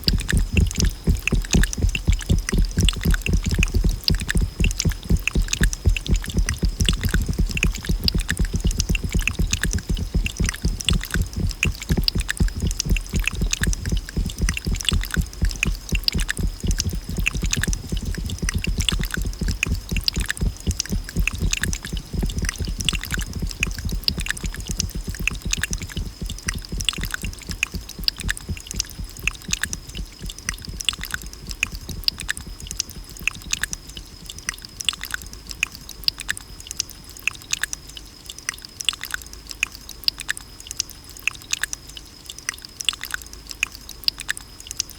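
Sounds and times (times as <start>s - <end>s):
deep thuds: 0.0s - 33.6s
water dripping fast: 0.0s - 44.9s.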